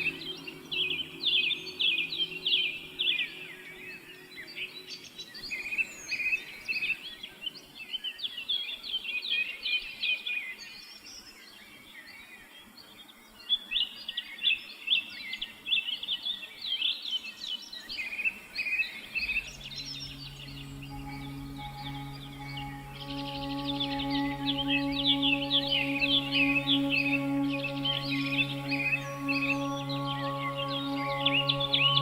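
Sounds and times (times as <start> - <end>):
soft music notes: 0.0 - 6.9, 19.0 - 32.0
songbirds chirping and singing: 0.0 - 7.2, 19.0 - 32.0.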